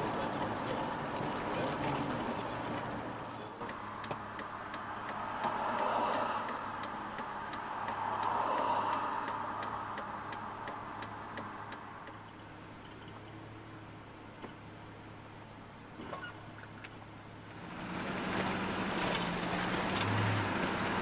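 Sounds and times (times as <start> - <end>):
vehicle engine hum: 0.0 - 21.0
sharp regular ticking: 3.6 - 13.2.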